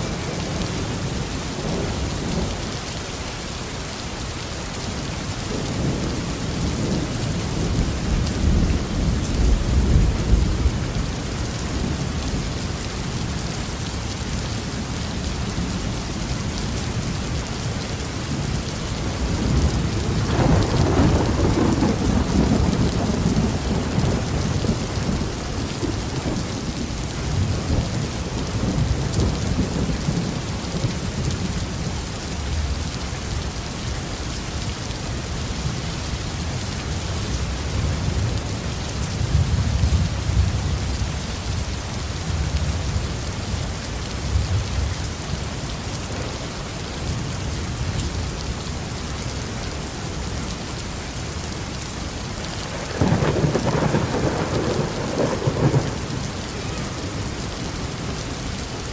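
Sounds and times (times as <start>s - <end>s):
heavy rain: 0.0s - 58.9s
thunder rolling: 19.4s - 31.0s, 52.7s - 58.0s.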